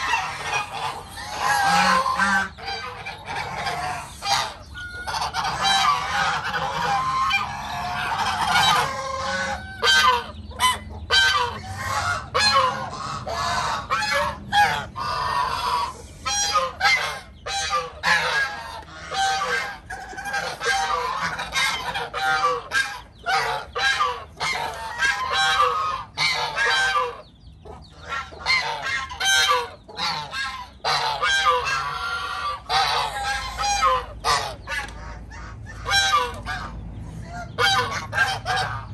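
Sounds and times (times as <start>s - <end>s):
geese honking: 0.0s - 38.9s.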